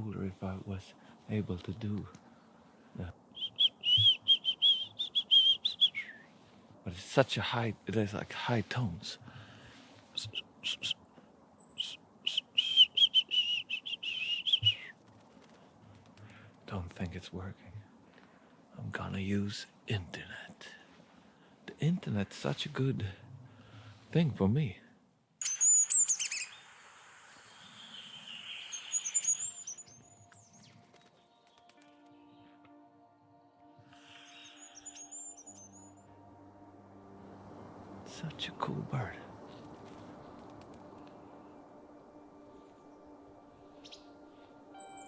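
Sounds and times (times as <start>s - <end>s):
high thin bird song: 3.3s - 6.4s, 10.2s - 15.0s, 25.4s - 32.6s, 33.9s - 36.1s, 39.0s - 45.0s
person whistling high notes: 3.4s - 6.2s, 11.8s - 14.9s, 33.9s - 36.0s, 44.8s - 45.0s.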